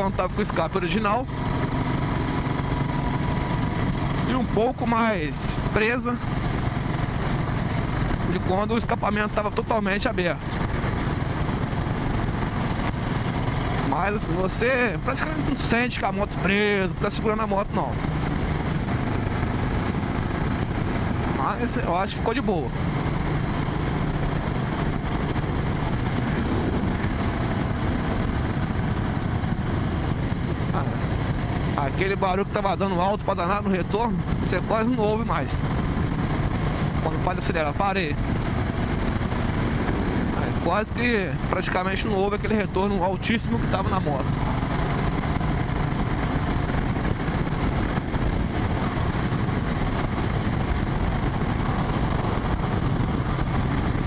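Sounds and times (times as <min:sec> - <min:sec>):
rider speaking: 0:00.0 - 0:01.6, 0:03.9 - 0:10.7, 0:13.4 - 0:18.4, 0:21.2 - 0:22.9, 0:30.6 - 0:35.8, 0:36.8 - 0:38.9, 0:40.2 - 0:44.8
motorcycle engine running: 0:00.0 - 0:54.0
wind on microphone: 0:22.7 - 0:32.1, 0:33.0 - 0:37.4, 0:38.0 - 0:54.0.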